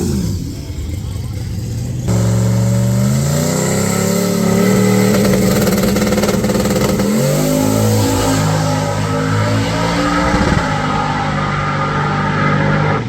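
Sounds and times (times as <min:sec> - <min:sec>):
car engine at full throttle: 0:00.0 - 0:13.0.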